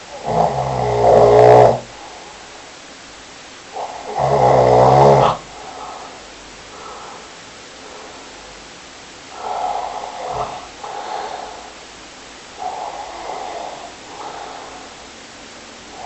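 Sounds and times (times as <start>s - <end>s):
person snoring: 0.1s - 2.2s, 3.7s - 6.2s, 9.3s - 11.8s, 12.5s - 15.2s.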